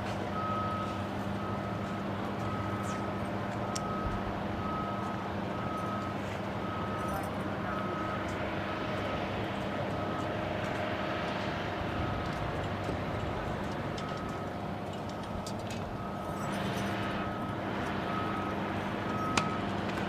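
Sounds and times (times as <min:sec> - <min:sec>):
idling truck engine hum: 0:00.0 - 0:20.0
truck reversing alarm beeping: 0:00.0 - 0:20.0.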